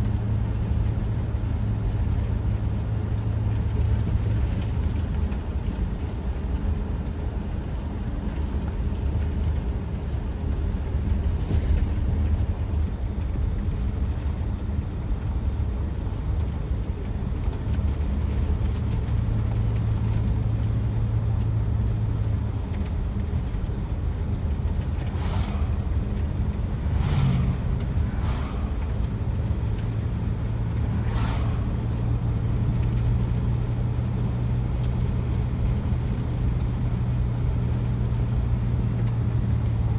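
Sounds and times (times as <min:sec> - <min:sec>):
vehicle road and engine drone: 0:00.0 - 0:39.9
short swishes: 0:24.8 - 0:32.2.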